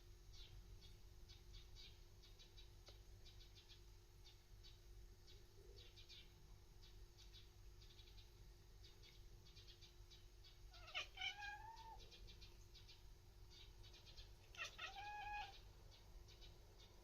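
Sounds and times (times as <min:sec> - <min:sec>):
small birds chirping: 0:00.0 - 0:17.0
cat meow-like cry: 0:10.7 - 0:12.0, 0:14.4 - 0:15.7
cat chattering: 0:10.7 - 0:12.6, 0:13.5 - 0:15.7.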